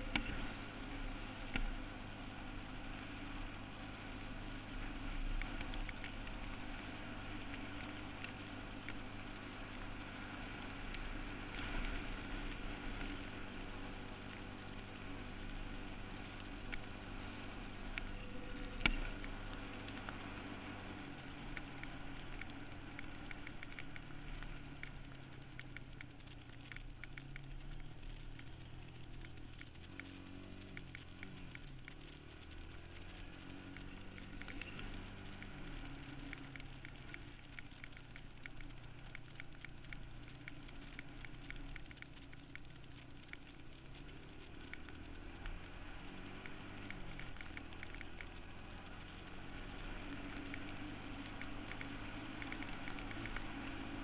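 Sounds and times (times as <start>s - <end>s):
atv engine running: 0.0s - 54.0s
sharp ticks: 16.4s - 54.0s.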